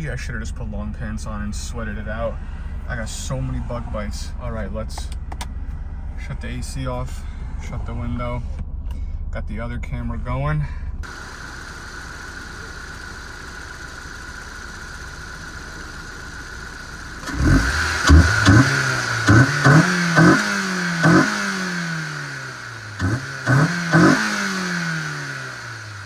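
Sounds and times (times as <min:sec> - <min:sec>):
car engine idling and revving: 0:00.0 - 0:26.0.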